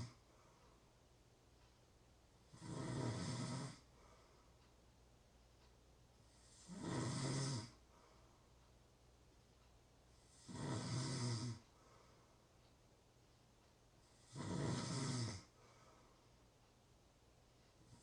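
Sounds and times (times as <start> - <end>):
person snoring: 2.5 - 3.9, 6.4 - 7.8, 10.3 - 11.6, 14.1 - 15.5.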